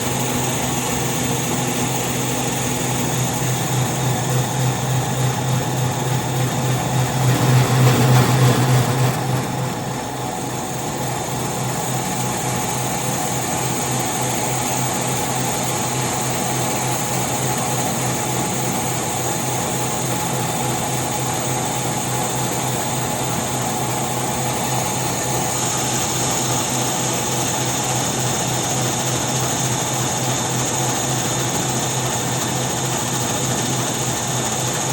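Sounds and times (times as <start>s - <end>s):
concrete milling machine humming: 0.0s - 20.6s.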